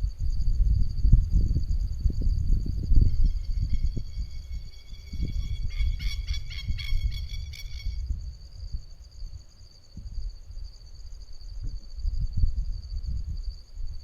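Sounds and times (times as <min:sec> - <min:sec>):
insects droning: 0:00.0 - 0:14.0
pulsed insect chirping: 0:01.6 - 0:09.9.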